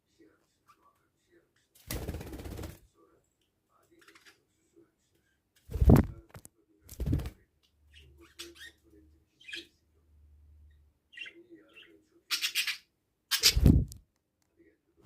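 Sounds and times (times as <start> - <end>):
budgerigar chirping: 11.1 - 13.6.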